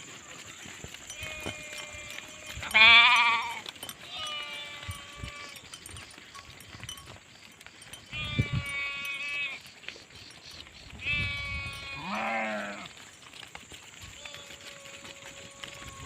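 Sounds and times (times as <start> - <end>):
sheep bleating: 1.1 - 5.7, 8.1 - 9.6, 11.0 - 12.9, 14.1 - 16.0.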